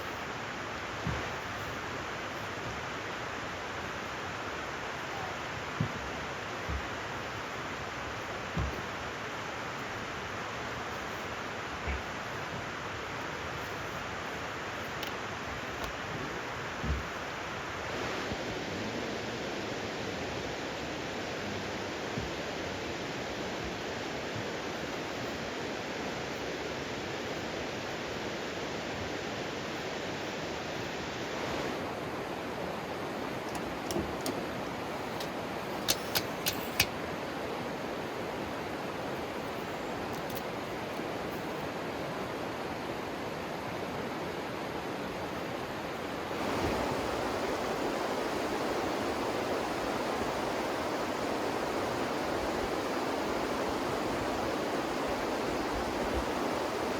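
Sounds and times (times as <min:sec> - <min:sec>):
river water rushing: 0:28.4 - 0:56.9
sharp clicks: 0:35.2 - 0:36.9.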